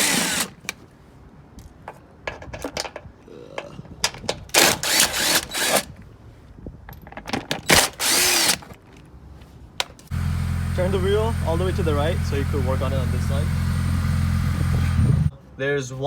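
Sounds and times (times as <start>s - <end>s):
power drill running: 0.0s - 0.5s, 4.6s - 5.9s, 7.7s - 8.6s, 10.1s - 15.3s.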